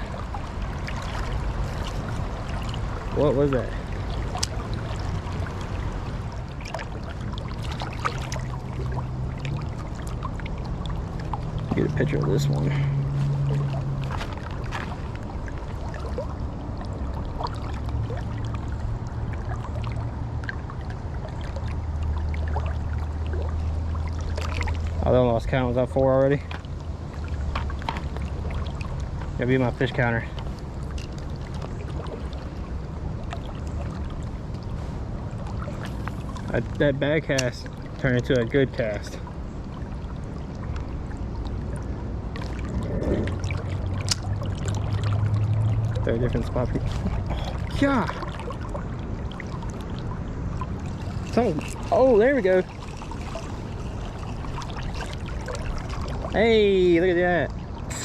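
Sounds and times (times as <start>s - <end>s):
low rumble: 0.0s - 25.5s, 39.2s - 56.3s
river current rushing: 0.0s - 25.8s, 38.6s - 58.0s
water splashing and trickling: 0.0s - 58.0s.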